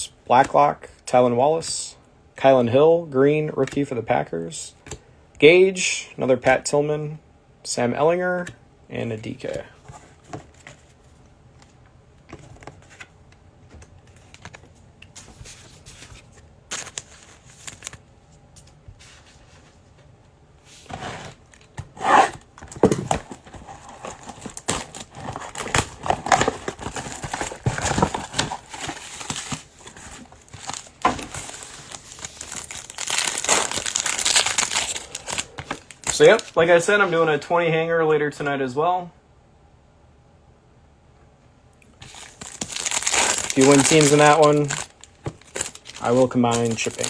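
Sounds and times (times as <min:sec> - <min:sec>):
card pack wrappers crinkling: 0:15.4 - 0:18.0, 0:22.2 - 0:36.8, 0:42.0 - 0:47.0.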